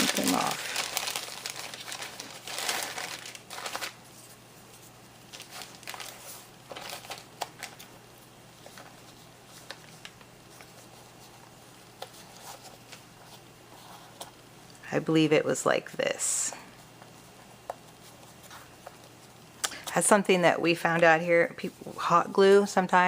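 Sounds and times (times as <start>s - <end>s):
paper rustling and crinkling: 0.0s - 8.0s, 8.6s - 14.4s, 17.0s - 20.0s.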